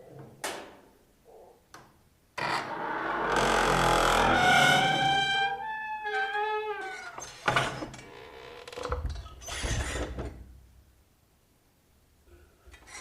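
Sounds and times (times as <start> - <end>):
squeaky door hinge creaking: 2.4 - 10.3.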